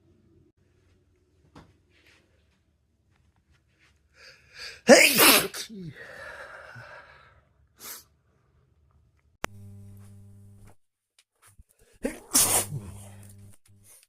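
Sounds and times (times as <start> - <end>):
man sneezing: 4.6 - 6.2, 12.0 - 13.2.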